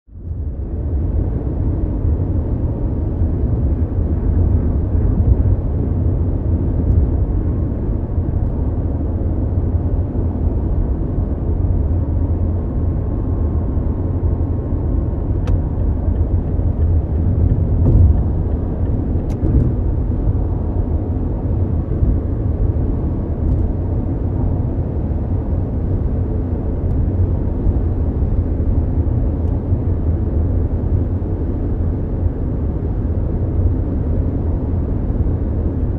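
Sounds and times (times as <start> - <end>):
road and engine drone: 0.1 - 35.9.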